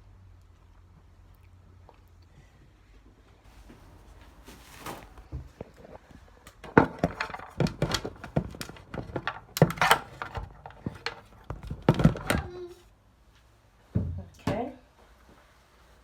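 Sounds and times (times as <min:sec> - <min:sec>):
objects knocking and clicking: 0:06.5 - 0:12.6.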